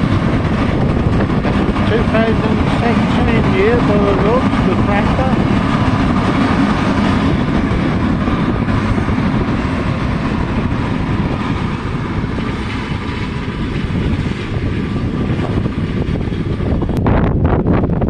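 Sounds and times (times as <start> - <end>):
tractor engine running: 0.0 - 18.0
wind buffeting microphone: 0.0 - 18.0.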